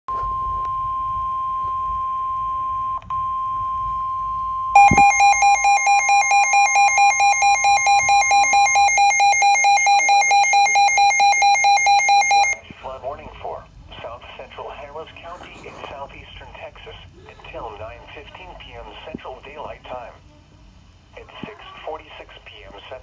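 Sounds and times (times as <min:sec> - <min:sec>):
harsh electronic alarm beeping: 0:00.2 - 0:12.6
steady high alert tone: 0:04.8 - 0:12.6.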